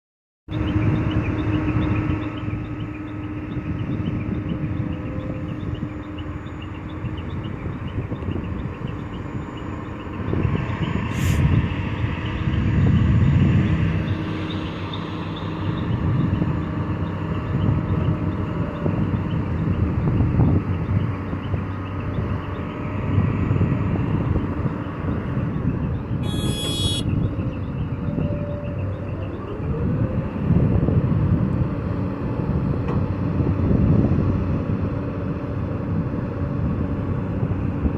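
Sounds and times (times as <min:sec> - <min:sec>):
heavy machinery diesel engine: 0:00.5 - 0:37.9
brief high-pitched tone: 0:26.2 - 0:27.1.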